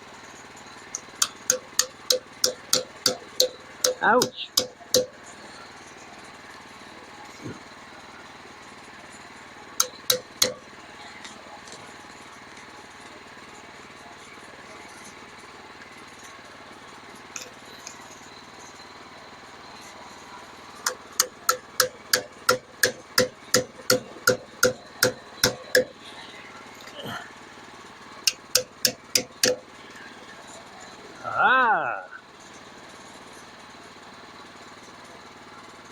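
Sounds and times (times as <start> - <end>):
hammer blows on metal: 1.2 - 5.2, 9.8 - 10.6, 20.9 - 26.0, 28.3 - 29.6.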